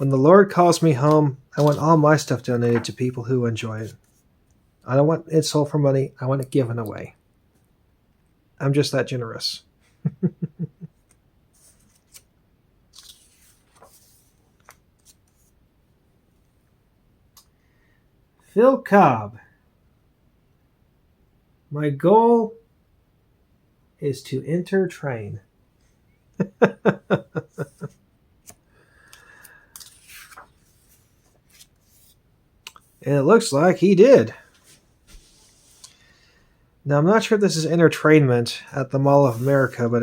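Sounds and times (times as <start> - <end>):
paper pages rustling: 0.6 - 4.2, 11.6 - 12.3, 12.9 - 15.6, 27.6 - 33.8, 34.4 - 36.0, 39.2 - 40.0
person chuckling: 10.0 - 11.0, 26.4 - 28.0
book pages clicking: 13.0 - 15.5, 28.4 - 32.9.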